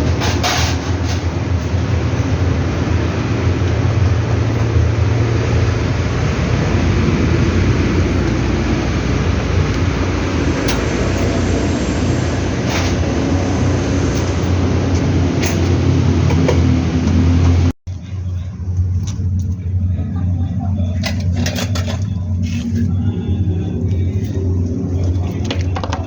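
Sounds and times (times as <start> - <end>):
washing machine rumble and hum: 0.0 - 26.0.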